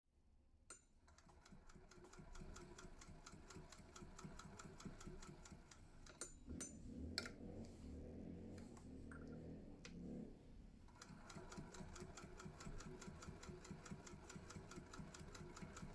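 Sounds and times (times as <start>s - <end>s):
hand-crank sewing machine clicking: 1.1s - 6.4s, 10.9s - 15.9s.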